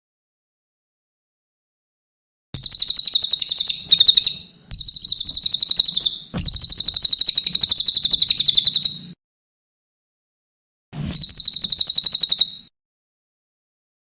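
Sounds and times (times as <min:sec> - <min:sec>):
songbird trilling: 0:02.6 - 0:09.0, 0:11.1 - 0:12.7.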